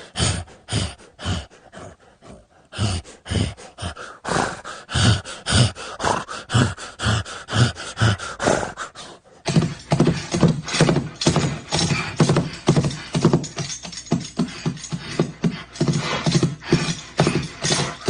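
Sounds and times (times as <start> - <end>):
horse hooves clip-clopping: 9.5 - 18.0.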